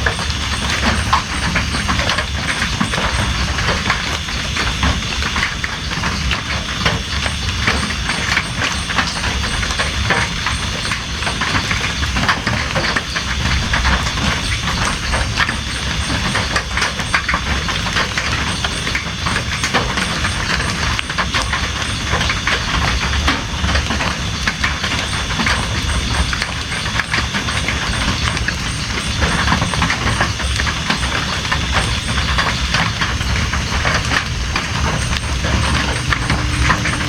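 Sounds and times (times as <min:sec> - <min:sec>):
steady rain falling: 0:00.0 - 0:37.0
low rumble: 0:34.5 - 0:37.0.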